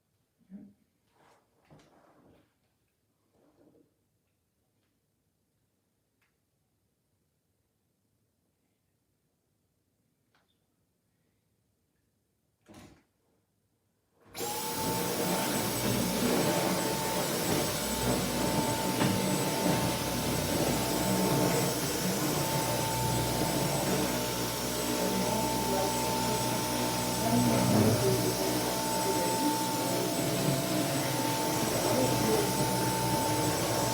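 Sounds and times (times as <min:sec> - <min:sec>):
vacuum cleaner running: 0:14.4 - 0:33.9.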